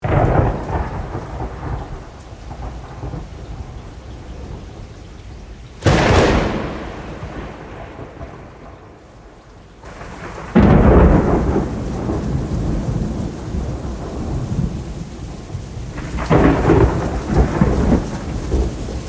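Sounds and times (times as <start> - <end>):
sharp thunderclap: 0.0 - 19.0
steady rain: 0.0 - 19.0
thunder rumbling: 0.0 - 19.0.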